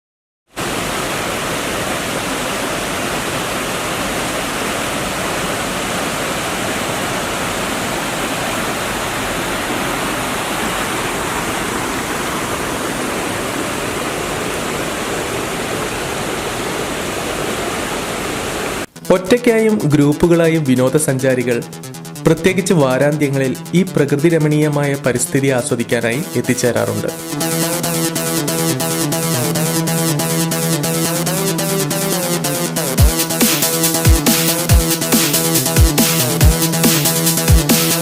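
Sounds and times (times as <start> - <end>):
river water rushing: 0.6 - 18.9.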